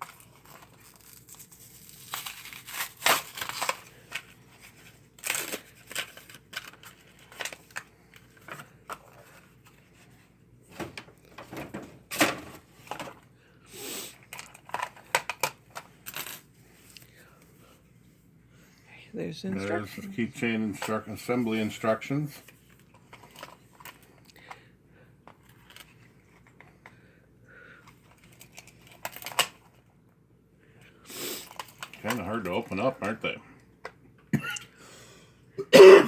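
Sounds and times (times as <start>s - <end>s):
packaging tearing and crinkling: 0.0s - 9.5s.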